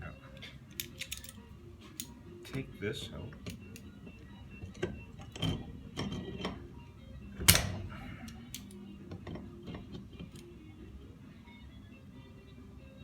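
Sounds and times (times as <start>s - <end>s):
faint music: 0.0s - 13.0s
metal parts clicking and knocking: 0.7s - 2.2s, 3.3s - 6.7s, 7.4s - 10.5s.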